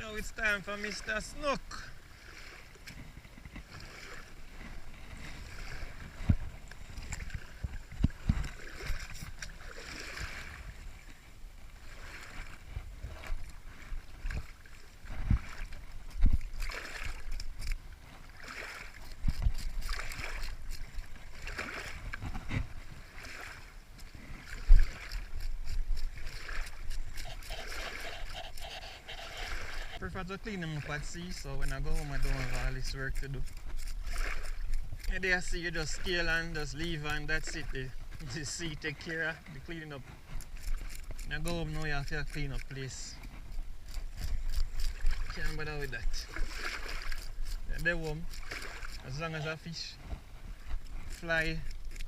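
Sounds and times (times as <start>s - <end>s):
knife scraping fish scales: 16.6s - 17.8s, 18.5s - 21.1s, 24.5s - 30.0s, 31.0s - 37.6s, 40.4s - 49.5s, 50.8s - 52.0s.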